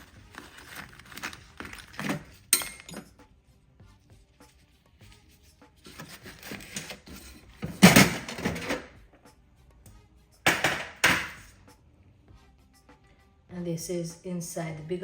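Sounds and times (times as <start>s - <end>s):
metal toolbox scraping and rattling: 0.0s - 3.1s, 5.9s - 9.0s.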